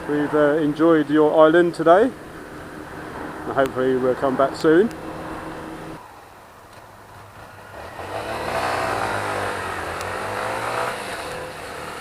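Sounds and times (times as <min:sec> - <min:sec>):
motorcycle engine accelerating: 0:07.0 - 0:12.0.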